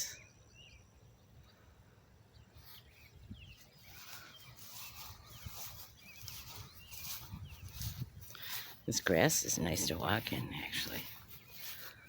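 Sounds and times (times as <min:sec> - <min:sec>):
small birds chirping: 0:00.0 - 0:12.0
rustling through grass: 0:02.6 - 0:12.0.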